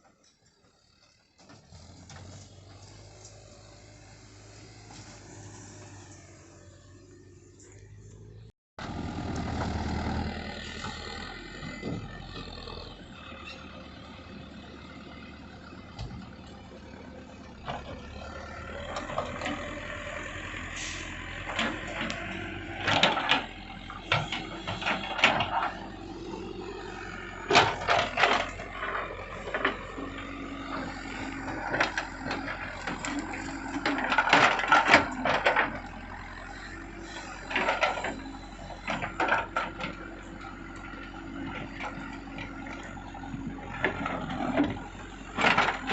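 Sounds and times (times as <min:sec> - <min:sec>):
excavator diesel engine running: 0:00.0 - 0:45.9
bucket clanking and scraping: 0:20.8 - 0:25.9, 0:27.4 - 0:30.0, 0:30.8 - 0:36.2.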